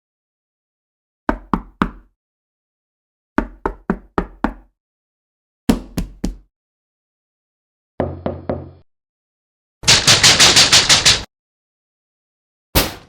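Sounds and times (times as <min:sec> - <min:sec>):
knocking on a door: 0:03.4 - 0:04.6, 0:05.7 - 0:06.5, 0:08.0 - 0:08.8.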